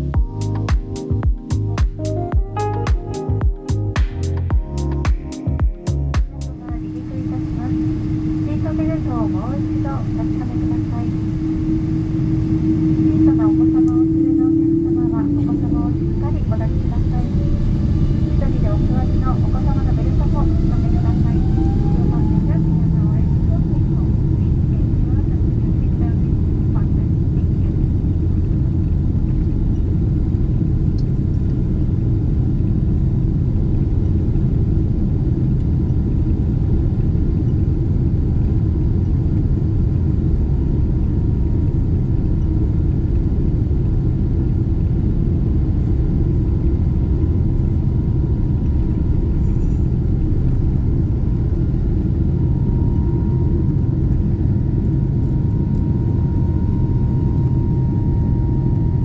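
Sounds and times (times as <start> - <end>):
thin whine: 0.0 - 25.3
jet engine cabin rumble: 6.6 - 59.0.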